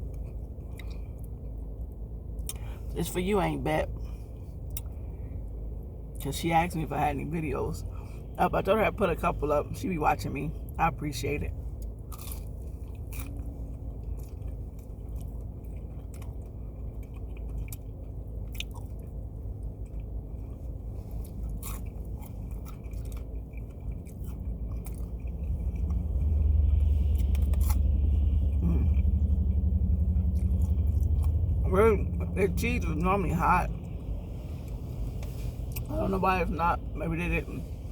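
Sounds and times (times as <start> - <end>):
chewing crunchy fried food: 0.0 - 2.7, 11.7 - 31.6
steady low hum: 0.0 - 37.9
vehicle rumble: 0.0 - 37.9.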